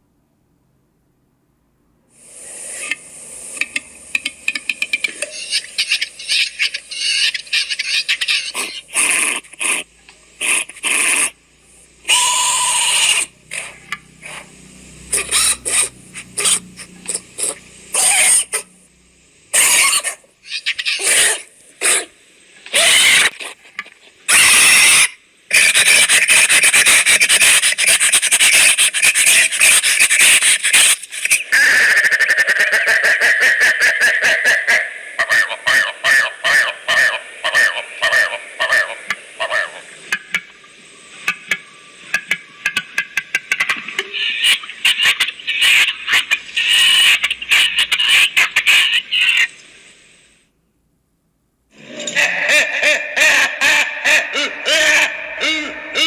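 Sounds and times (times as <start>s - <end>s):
animal-like squeals and screeches: 5.2s - 9.8s, 12.1s - 14.5s, 15.1s - 18.7s, 19.5s - 22.1s, 22.7s - 23.6s, 24.3s - 40.0s, 54.3s - 56.0s.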